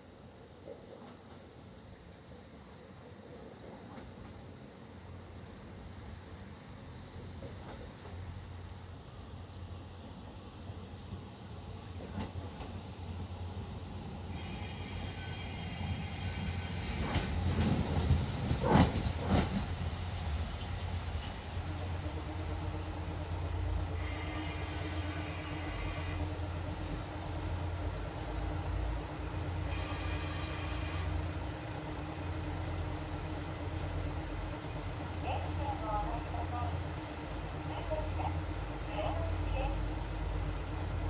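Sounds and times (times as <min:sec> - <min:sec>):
train wheels clattering: 0:16.9 - 0:20.2
brakes squealing: 0:19.6 - 0:23.3, 0:24.0 - 0:31.4.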